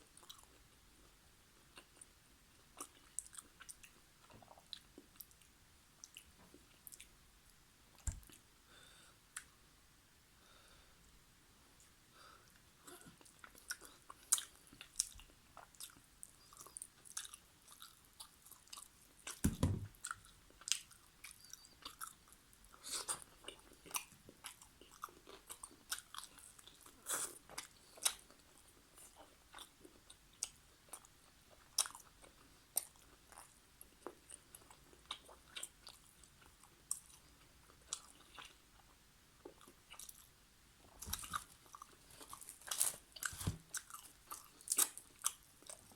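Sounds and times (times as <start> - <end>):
deep thump: 19.4 - 20.0
chewing and biting: 20.0 - 45.9.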